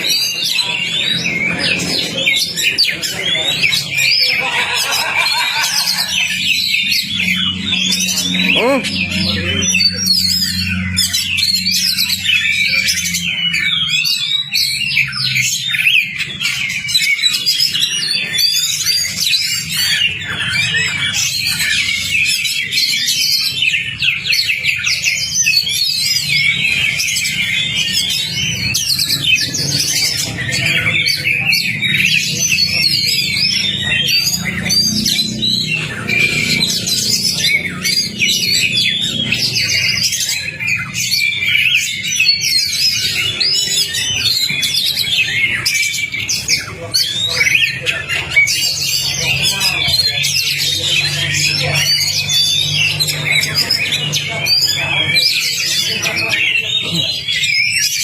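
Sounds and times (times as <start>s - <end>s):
bird singing: 0.0s - 58.0s.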